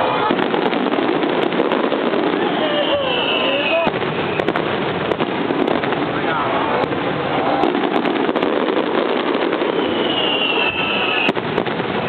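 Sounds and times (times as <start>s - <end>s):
fireworks bursts and crackling: 0.0s - 12.0s
sharp firework bang: 0.2s - 12.0s
high firework whistle: 1.6s - 4.6s, 9.0s - 11.6s.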